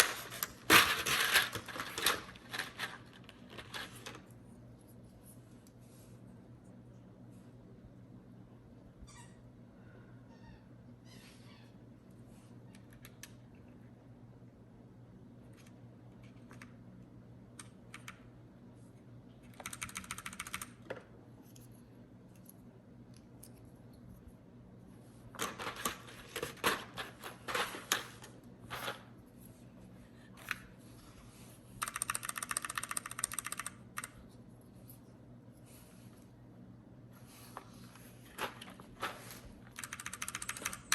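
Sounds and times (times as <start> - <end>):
mechanical keyboard typing: 17.6 - 18.2, 19.5 - 20.8, 31.8 - 34.2, 39.7 - 40.9.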